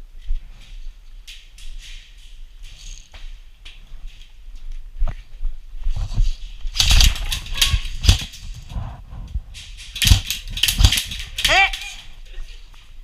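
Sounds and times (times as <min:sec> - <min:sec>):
airsoft gunfire snaps: 0:10.0 - 0:11.8.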